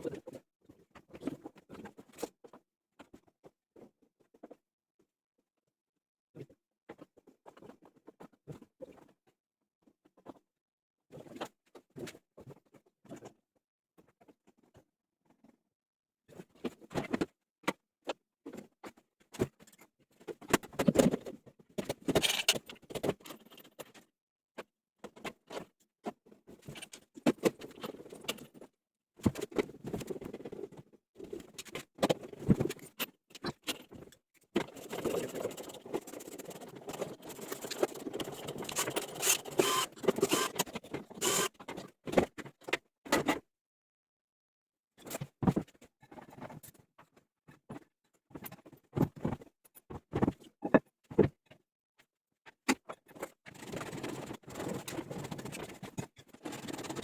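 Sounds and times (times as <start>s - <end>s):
tools clicking and knocking: 36.8s - 41.8s.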